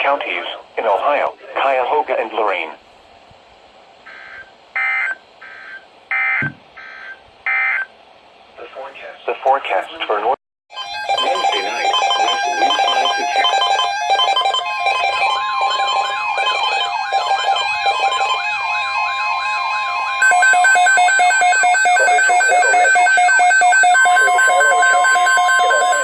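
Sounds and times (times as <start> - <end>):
data-burst alert tones: 10.7 - 26.0
steady attention tone: 10.7 - 26.0.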